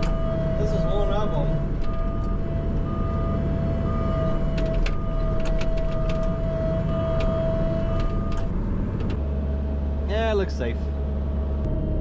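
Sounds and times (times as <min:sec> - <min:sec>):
alarm beeping: 0:00.0 - 0:08.5
diesel engine with whine: 0:00.0 - 0:12.0.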